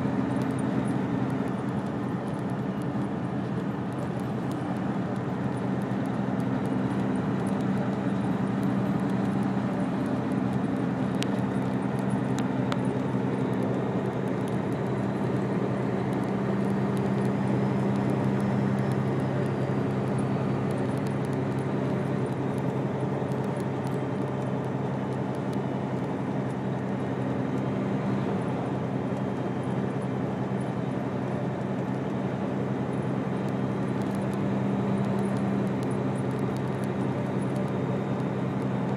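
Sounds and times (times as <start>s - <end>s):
vehicle engine drone: 0.0s - 38.9s.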